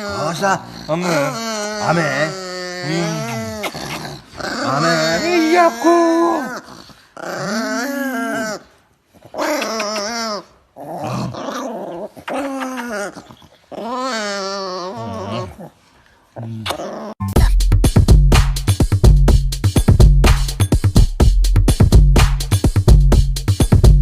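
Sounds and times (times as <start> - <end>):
dog growling and whining: 0.0 - 17.3.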